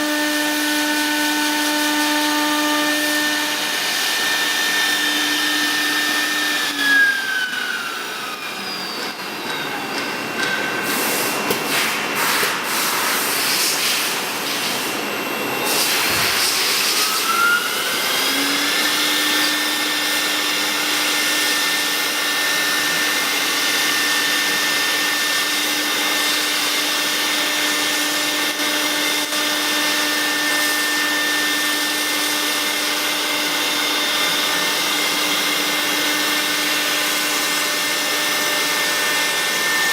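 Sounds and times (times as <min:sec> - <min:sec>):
router spindle whining: 0:00.0 - 0:11.5, 0:15.0 - 0:39.9
hiss and clatter: 0:10.0 - 0:14.9.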